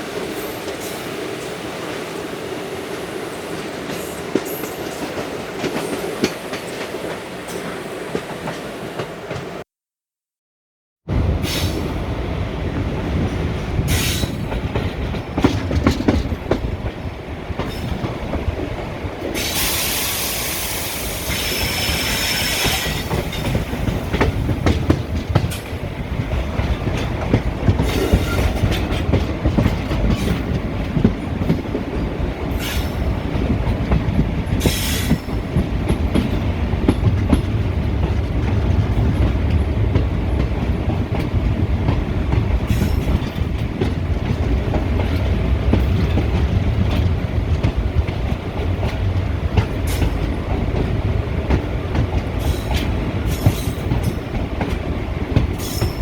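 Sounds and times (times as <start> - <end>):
wheels clacking over rail joints: 2.8 - 9.6, 12.7 - 56.0
train low rumble: 11.1 - 56.0
rushing hiss with high squeal: 19.4 - 23.2, 32.6 - 33.0, 34.6 - 35.3.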